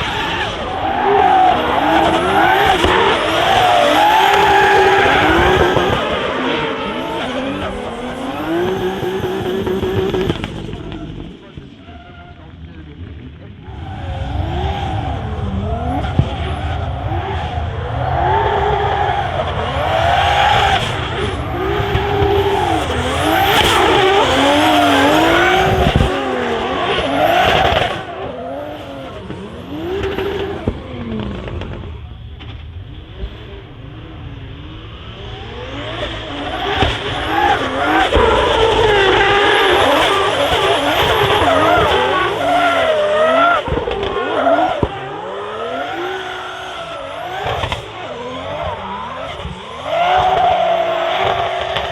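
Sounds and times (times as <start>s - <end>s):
engine revving hard: 0.0s - 11.2s, 13.6s - 51.9s
tyres squealing: 21.5s - 28.0s.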